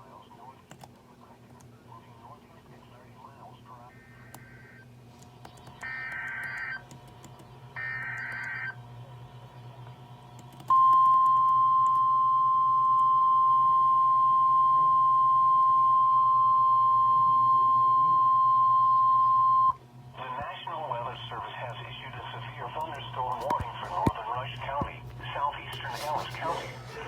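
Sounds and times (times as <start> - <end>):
steady warning alarm tone: 3.8 - 5.0, 5.8 - 6.9, 7.7 - 19.8.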